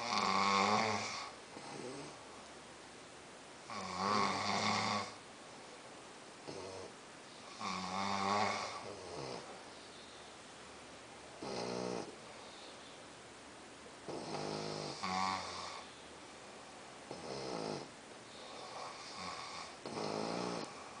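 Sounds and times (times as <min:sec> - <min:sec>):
dog snoring: 0:00.0 - 0:02.2, 0:03.7 - 0:05.2, 0:06.4 - 0:09.6, 0:11.4 - 0:12.7, 0:14.1 - 0:15.9, 0:17.1 - 0:21.0
man snoring: 0:00.0 - 0:02.2, 0:03.7 - 0:05.2, 0:07.5 - 0:09.5, 0:11.4 - 0:12.1, 0:14.1 - 0:15.8, 0:17.1 - 0:21.0.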